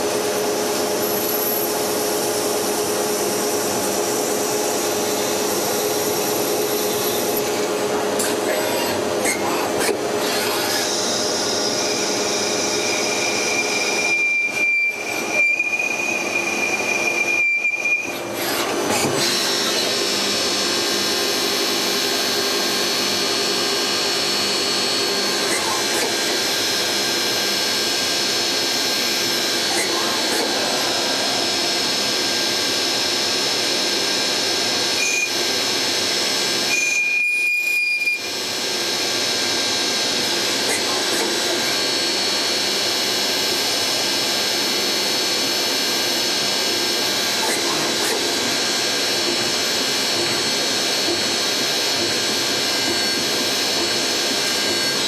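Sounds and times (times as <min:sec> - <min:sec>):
lathe whirring and hissing: 0:00.0 - 0:37.1, 0:38.2 - 0:55.0
thin high whine: 0:23.8 - 0:35.4.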